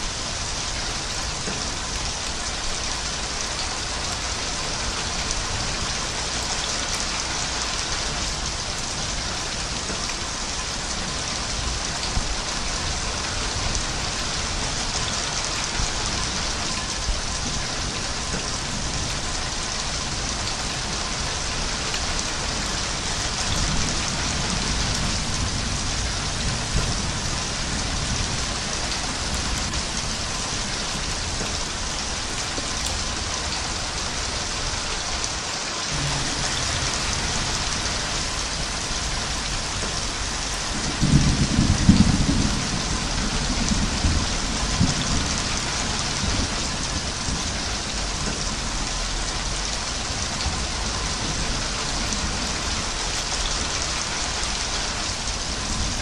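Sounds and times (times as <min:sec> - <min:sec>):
heavy rain: 0:00.0 - 0:56.0
low rumble: 0:35.9 - 0:45.0.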